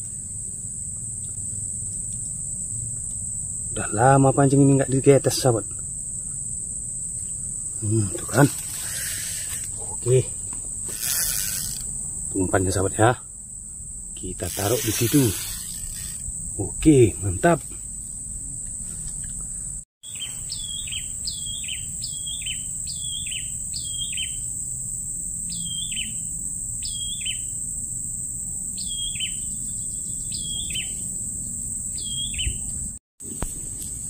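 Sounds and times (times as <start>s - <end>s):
high insect drone: 0.0s - 34.0s
bird calling: 8.6s - 10.0s.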